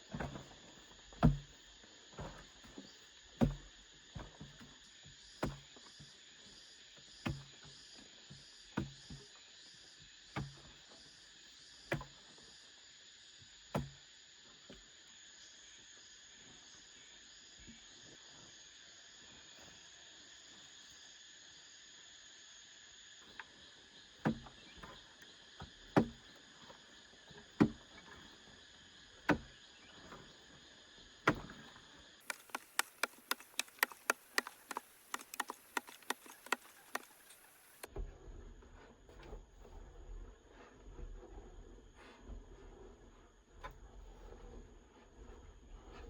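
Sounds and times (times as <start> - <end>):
insects droning: 0.0 - 37.9
hand tool striking hard: 32.2 - 37.9
light sharp taps: 32.3 - 37.9.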